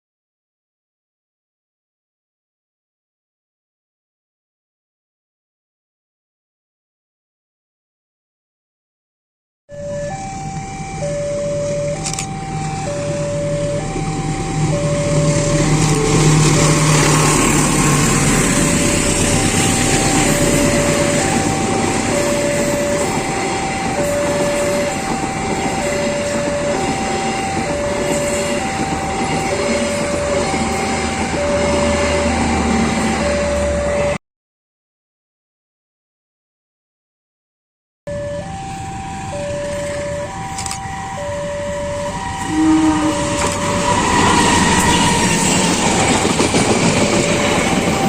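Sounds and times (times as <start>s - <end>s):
passing train rumble: 9.7s - 34.2s, 38.1s - 48.0s
two-tone crossing alarm beeping: 9.7s - 34.2s, 38.1s - 48.0s.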